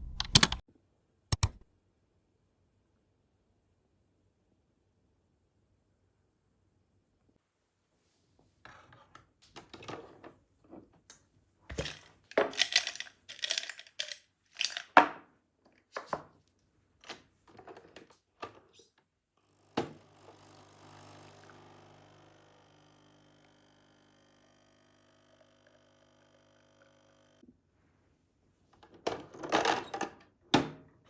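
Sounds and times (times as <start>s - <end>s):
sharp click: 0.0s - 0.6s, 1.3s - 1.6s
objects rustling and clattering: 11.7s - 15.0s
small appliance humming: 19.4s - 27.4s.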